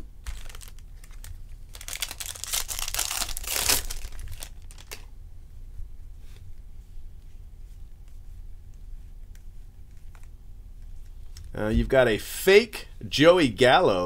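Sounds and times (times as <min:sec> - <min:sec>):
wrapper crinkling and tearing: 0:00.0 - 0:05.1.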